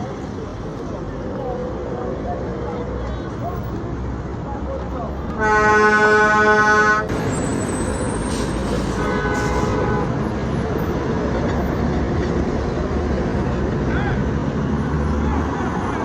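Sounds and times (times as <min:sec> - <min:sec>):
road traffic noise: 0:00.0 - 0:16.0
loud vehicle horn: 0:05.3 - 0:07.2, 0:08.8 - 0:10.2.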